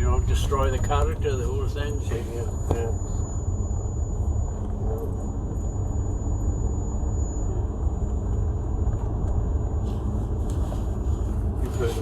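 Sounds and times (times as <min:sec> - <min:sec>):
car road and engine rumble: 0:00.0 - 0:12.0.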